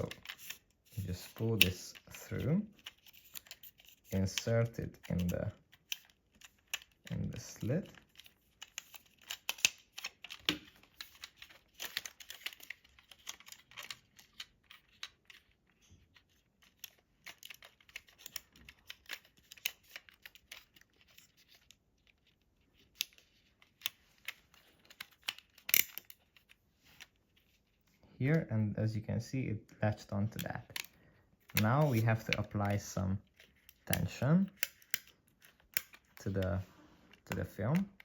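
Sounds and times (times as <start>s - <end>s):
film rustling and scratching: 0.0s - 27.8s.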